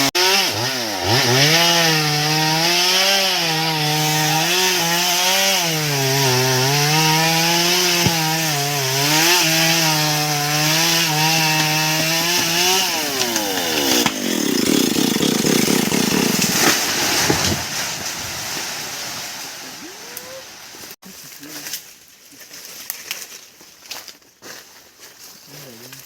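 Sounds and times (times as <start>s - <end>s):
chainsaw cutting wood: 0.0s - 19.7s.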